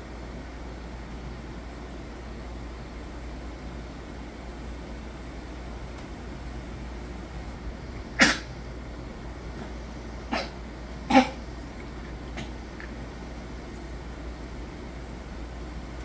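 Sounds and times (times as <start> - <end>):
steady low hum: 0.0 - 16.0
pet coughing: 8.0 - 14.1.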